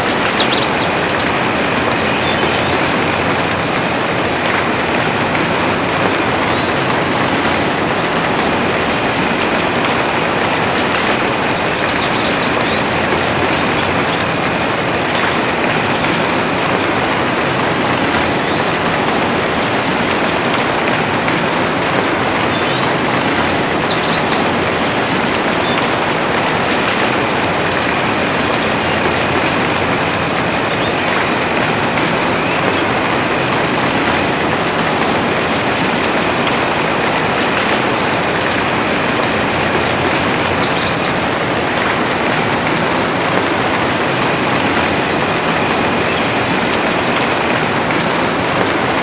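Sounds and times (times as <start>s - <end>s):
falling bird calls: 0.0s - 3.6s, 9.3s - 14.3s, 22.2s - 24.8s, 38.5s - 41.3s
high-pitched drone: 0.0s - 49.0s.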